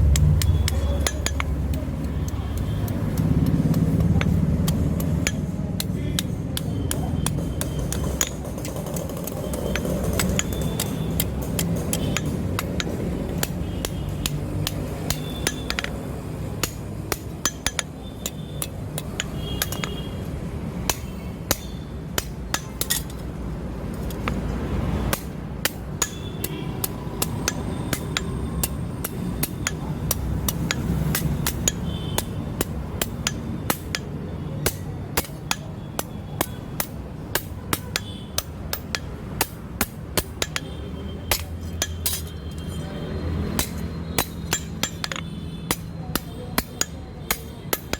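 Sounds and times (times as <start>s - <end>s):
steady low rumble: 0.0s - 2.0s
hammer striking steel on anvil: 0.0s - 20.1s, 20.8s - 23.3s, 25.1s - 47.9s.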